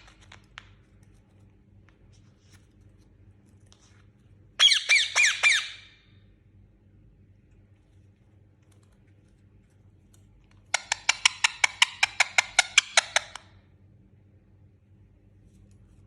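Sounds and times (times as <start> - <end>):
parrot clicking calls: 10.7 - 13.5.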